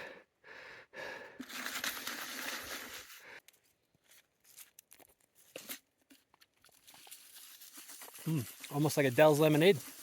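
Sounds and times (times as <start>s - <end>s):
snow crunching and scraping: 6.8s - 10.0s.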